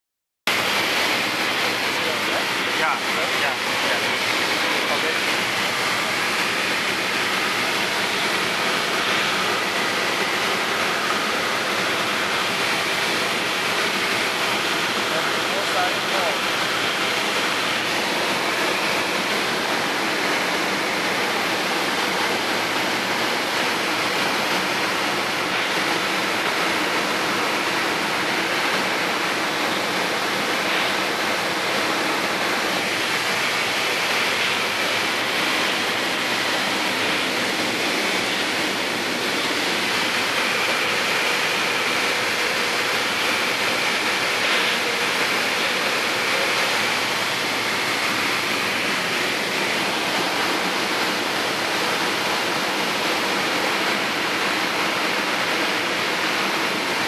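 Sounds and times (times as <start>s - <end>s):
aircraft cabin engine hiss: 0.6s - 16.4s.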